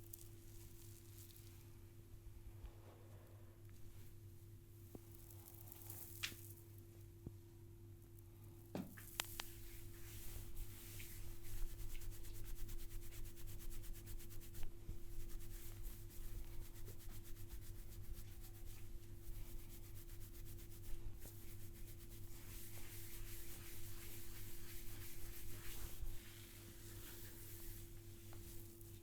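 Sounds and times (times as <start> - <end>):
hands rubbing in a massage: 8.9 - 29.0.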